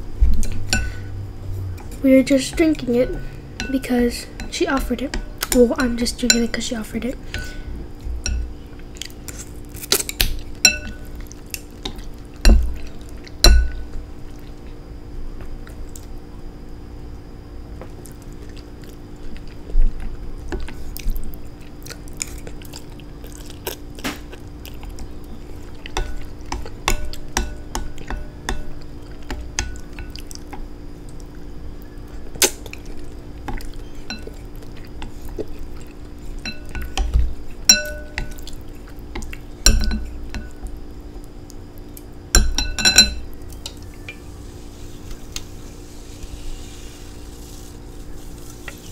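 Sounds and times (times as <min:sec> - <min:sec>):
cutlery clinking against dishes: 0:37.7 - 0:38.4, 0:39.6 - 0:40.5, 0:42.4 - 0:43.8.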